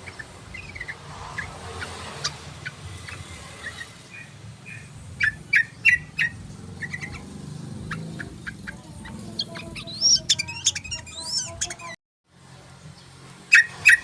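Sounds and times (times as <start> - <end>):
bird chirping and whistling: 0.0 - 1.5, 2.2 - 7.2, 9.4 - 12.0, 13.5 - 14.0.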